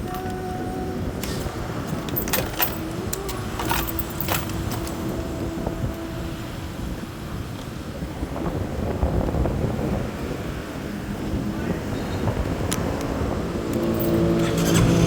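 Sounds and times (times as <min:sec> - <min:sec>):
vehicle engine and road rumble: 0:00.0 - 0:07.9, 0:10.2 - 0:15.0
sharp rattles and clicks: 0:01.2 - 0:05.2, 0:13.7 - 0:15.0
engine whine: 0:12.3 - 0:15.0.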